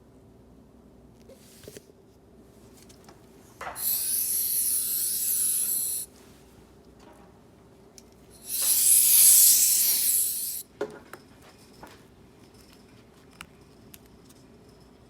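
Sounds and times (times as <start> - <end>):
hiss of air spray: 3.8 - 6.1, 8.4 - 10.6.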